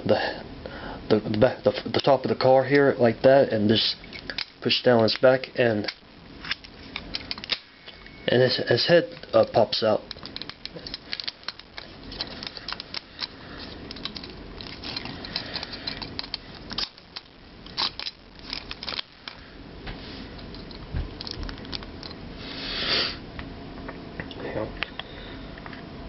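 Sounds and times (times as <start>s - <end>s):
plastic toy parts clicking: 9.2s - 19.4s.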